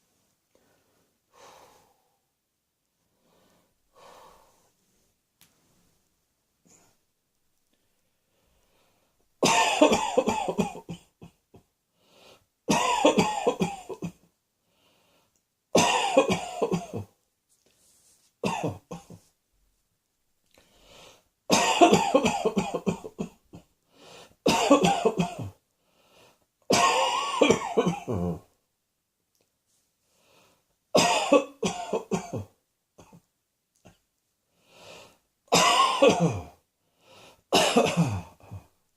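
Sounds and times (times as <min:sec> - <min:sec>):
person coughing: 0:09.4 - 0:11.4, 0:12.7 - 0:14.2, 0:15.8 - 0:17.1, 0:18.4 - 0:19.2, 0:21.5 - 0:23.7, 0:24.5 - 0:25.6, 0:26.7 - 0:28.4, 0:31.0 - 0:33.2, 0:35.5 - 0:36.6, 0:37.5 - 0:38.7.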